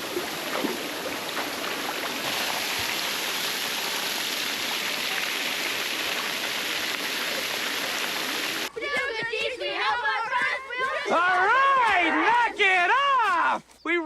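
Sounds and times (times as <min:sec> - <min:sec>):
waterfall rushing: 0:00.0 - 0:08.7.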